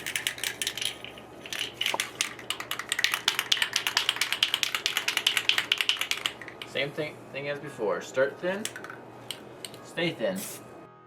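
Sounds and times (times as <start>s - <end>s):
spray can ball rattling: 0.0s - 6.8s, 8.6s - 10.6s.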